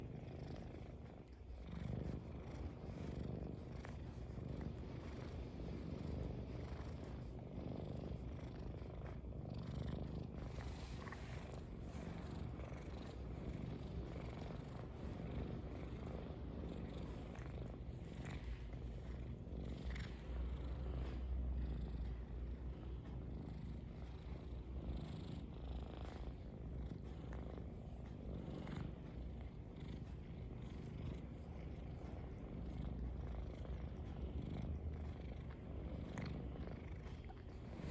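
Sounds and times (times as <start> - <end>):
cat licking fur: 0.0 - 37.9
cat purring: 0.0 - 37.9.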